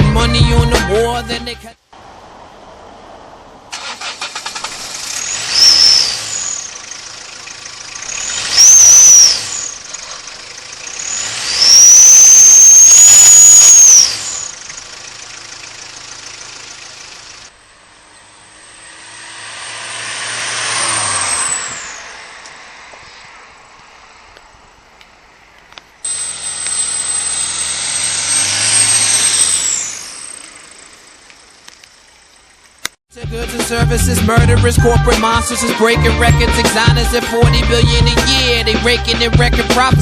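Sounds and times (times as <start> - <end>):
car engine revving: 2.0 - 25.3, 26.0 - 32.6
high exhaust whistle: 5.1 - 17.0, 17.7 - 23.3, 26.0 - 31.2.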